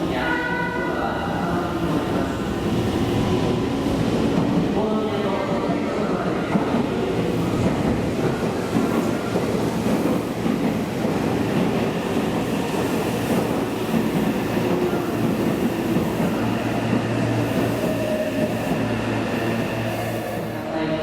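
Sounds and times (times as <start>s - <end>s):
train wheel and running noise: 1.0s - 21.0s.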